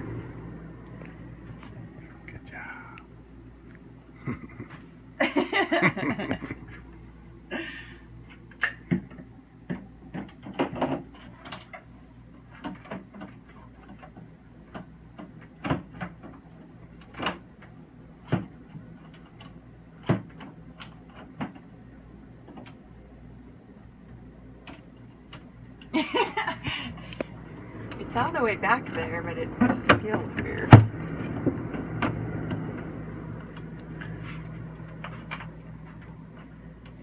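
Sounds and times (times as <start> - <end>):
steady low hum: 0.0 - 37.0
clicks and knocks of fridge parts: 8.2 - 23.0, 23.9 - 37.0.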